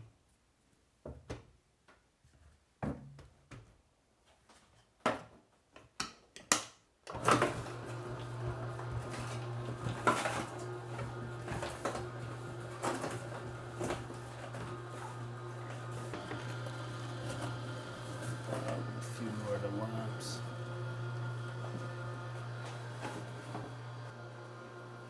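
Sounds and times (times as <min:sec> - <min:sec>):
juicer motor humming: 0:07.1 - 0:25.0
auger crunching through fruit: 0:07.2 - 0:24.0.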